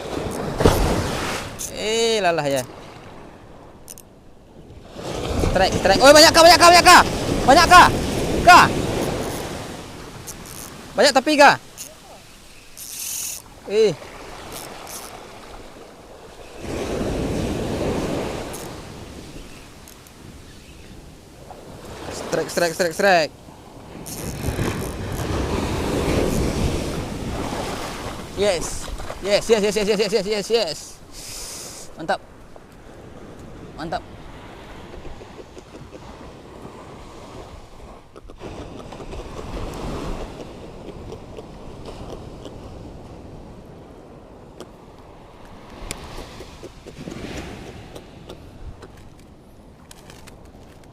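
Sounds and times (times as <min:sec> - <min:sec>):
sea waves on rocky shore: 0:00.0 - 0:50.9
person exclaiming: 0:05.6 - 0:08.8, 0:29.2 - 0:30.9.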